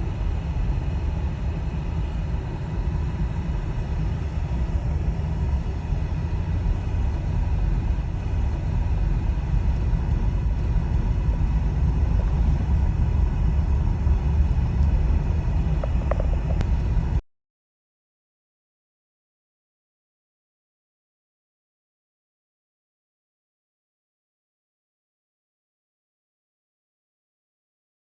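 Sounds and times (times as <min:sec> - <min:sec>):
car driving rumble: 0:00.0 - 0:17.2.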